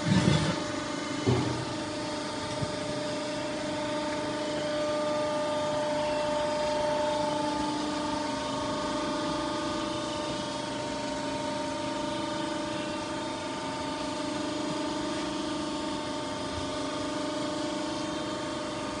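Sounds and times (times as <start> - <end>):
machine humming whine: 0.0 - 19.0.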